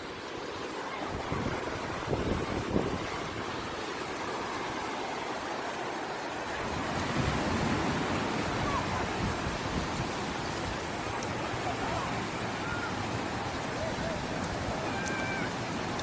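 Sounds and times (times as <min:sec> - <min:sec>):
ocean waves breaking: 0:00.0 - 0:16.0
wind on the microphone: 0:01.0 - 0:03.9, 0:06.5 - 0:16.0.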